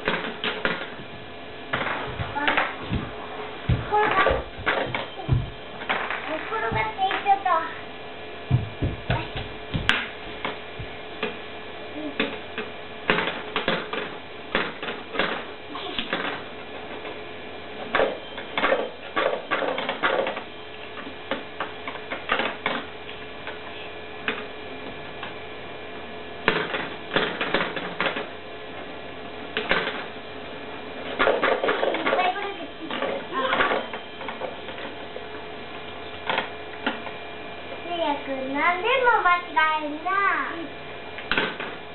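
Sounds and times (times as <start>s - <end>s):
plastic balls clattering in toy: 31.1s - 35.0s.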